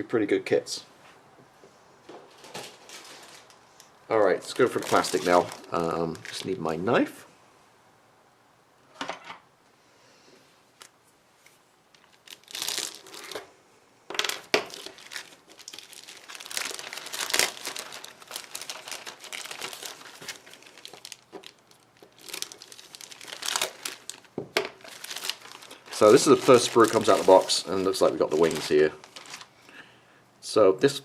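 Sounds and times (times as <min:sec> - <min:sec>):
plastic bag crinkling and tearing: 0:02.5 - 0:03.6, 0:04.4 - 0:06.8, 0:12.0 - 0:13.5, 0:14.2 - 0:29.6.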